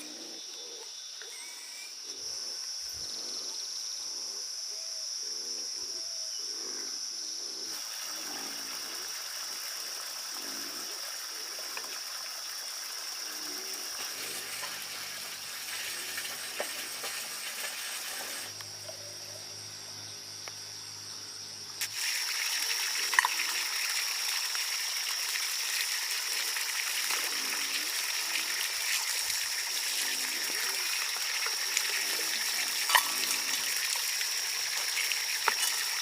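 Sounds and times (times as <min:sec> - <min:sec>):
crickets trilling: 0:00.0 - 0:36.0
steady hiss: 0:07.5 - 0:18.8.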